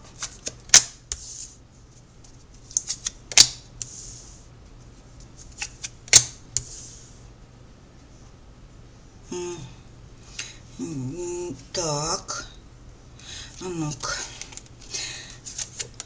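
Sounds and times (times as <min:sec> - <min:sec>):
cards being shuffled: 0:00.1 - 0:01.6, 0:02.2 - 0:03.9, 0:05.2 - 0:06.7, 0:14.3 - 0:16.0.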